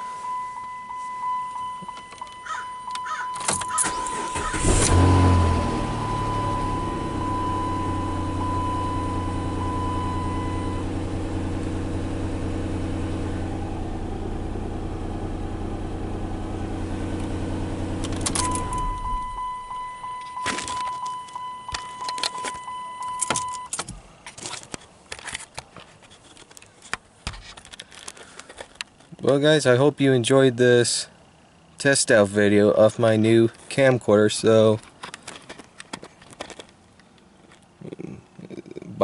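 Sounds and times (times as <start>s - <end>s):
high warning tone: 0.0s - 23.7s
car engine idling: 0.1s - 24.2s.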